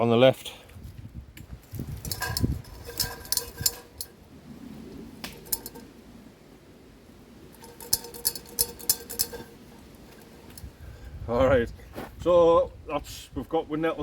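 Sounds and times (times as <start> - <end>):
metal clinking on frying pan: 2.0 - 4.1, 7.6 - 9.6
pan ringing: 7.5 - 10.3.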